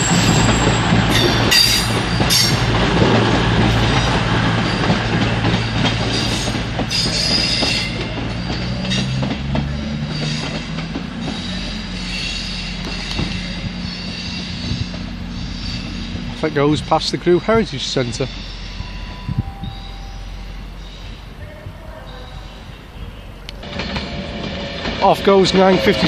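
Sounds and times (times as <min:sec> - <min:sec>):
wheel flange squeal: 0:00.0 - 0:02.7, 0:03.8 - 0:26.0
train moving slowly: 0:00.0 - 0:26.0.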